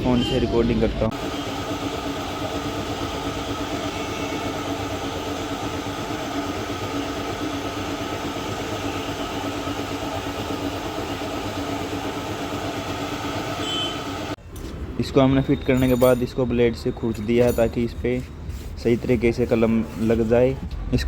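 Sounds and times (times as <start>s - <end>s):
machine humming: 1.1s - 14.4s.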